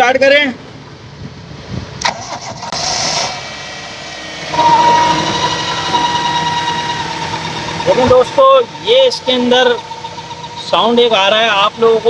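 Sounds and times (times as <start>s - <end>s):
car engine starting and idling: 2.0s - 12.0s
steady high whine: 2.8s - 12.0s.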